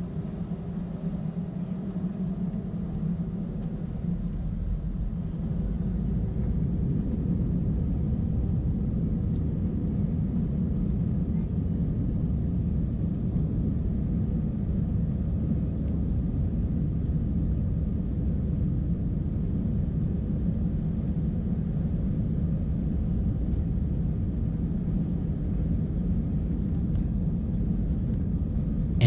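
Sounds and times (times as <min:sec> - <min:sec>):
jet engine rumble in cabin: 0:00.0 - 0:19.5.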